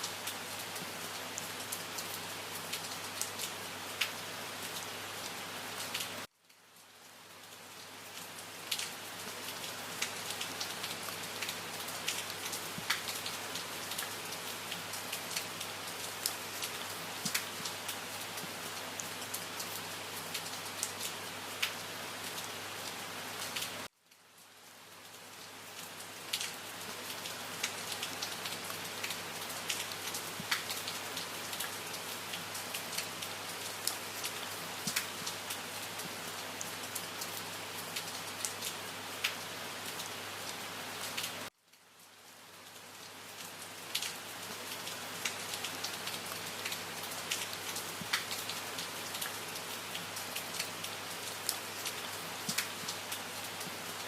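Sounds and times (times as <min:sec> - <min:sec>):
rain pattering: 0:00.0 - 0:54.0.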